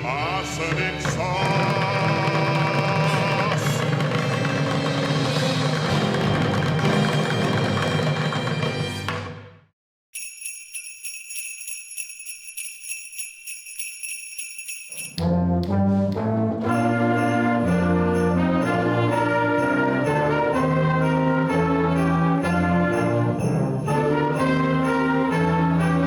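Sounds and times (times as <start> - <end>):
sleigh bells shaking: 10.2 - 15.2, 16.7 - 26.0
song: 12.5 - 26.0
brass-led band playing melody: 15.2 - 26.0.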